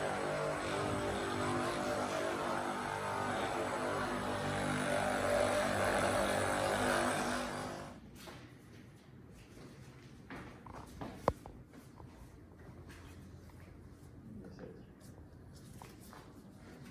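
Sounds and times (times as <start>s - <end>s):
motor-like buzz: 0.0s - 8.0s.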